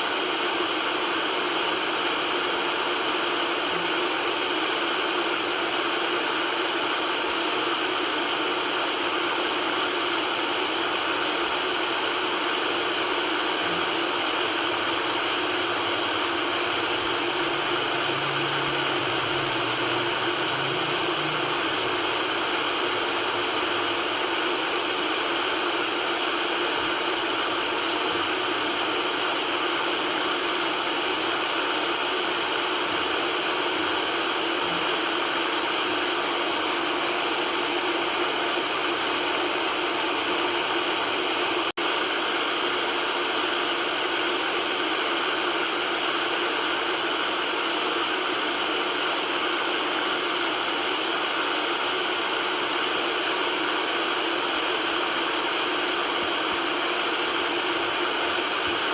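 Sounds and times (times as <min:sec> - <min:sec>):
white noise hiss: 0:13.3 - 0:34.8.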